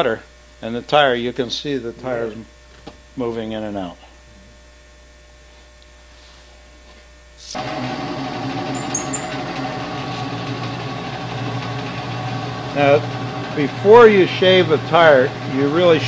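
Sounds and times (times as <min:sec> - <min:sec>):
faint electrical hum: 0:00.0 - 0:07.6
machine motor whirring: 0:07.6 - 0:16.0.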